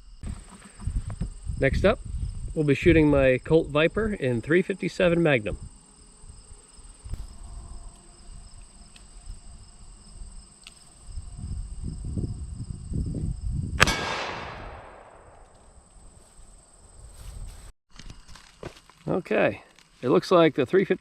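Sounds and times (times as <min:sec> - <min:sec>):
crickets chirping: 0:00.0 - 0:21.0
gunshot with echo: 0:13.8 - 0:15.5.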